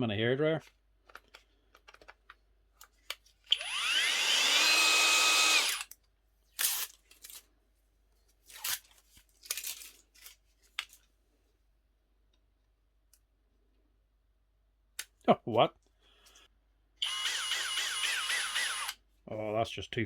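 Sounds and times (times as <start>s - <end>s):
cordless drill whining: 3.5s - 5.9s, 17.0s - 19.0s.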